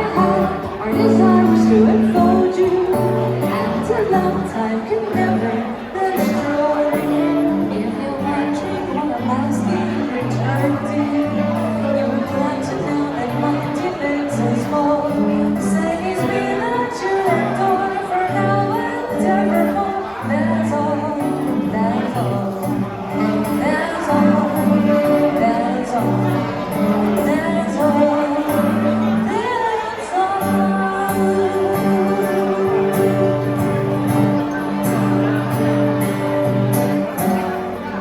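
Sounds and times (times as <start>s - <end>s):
person singing a melody: 0.0s - 38.0s.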